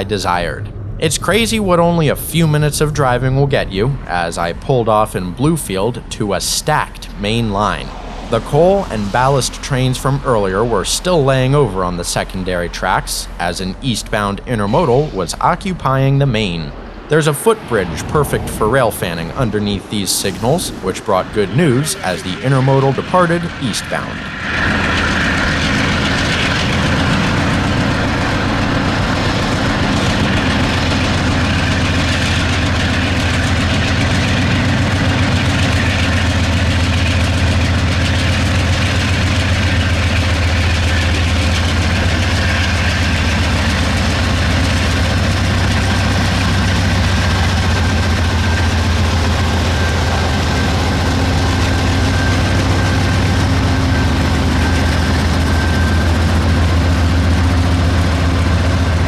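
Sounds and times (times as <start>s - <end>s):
diesel locomotives rumbling: 0.0s - 59.0s.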